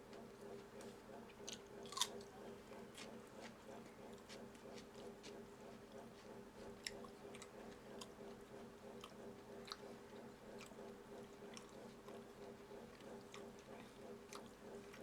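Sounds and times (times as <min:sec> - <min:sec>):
person chewing food: 0:01.5 - 0:02.3, 0:06.8 - 0:08.2, 0:09.0 - 0:09.9, 0:10.6 - 0:10.8, 0:11.5 - 0:12.2, 0:12.9 - 0:15.0.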